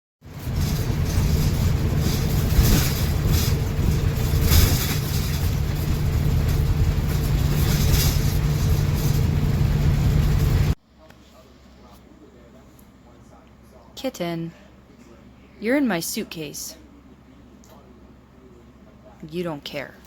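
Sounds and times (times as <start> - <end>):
vehicle road and engine rumble: 0.2 - 10.8.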